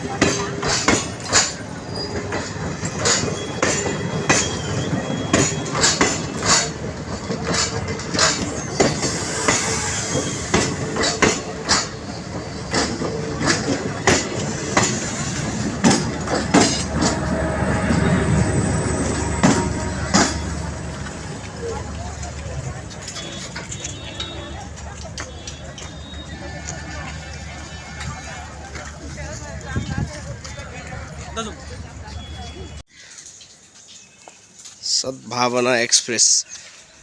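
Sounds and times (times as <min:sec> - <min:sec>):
wheels clacking over rail joints: 0:00.0 - 0:32.6
train rumbling past: 0:00.0 - 0:32.8
faint wheel squeal: 0:01.8 - 0:05.8.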